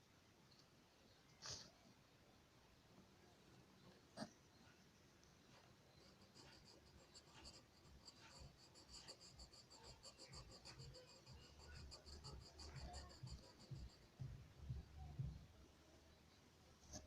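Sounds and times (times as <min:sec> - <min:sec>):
drawing tool scratching paper: 0:06.0 - 0:14.2
dull low knocks: 0:12.8 - 0:15.5.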